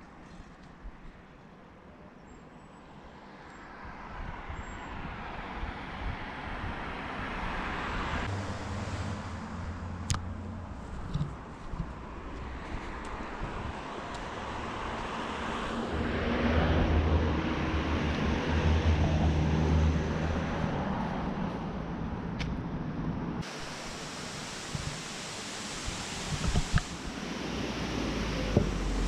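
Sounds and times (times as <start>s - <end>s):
vehicle engine passing: 6.9s - 12.6s, 13.7s - 22.4s, 27.2s - 29.0s
wind on microphone: 25.8s - 29.0s.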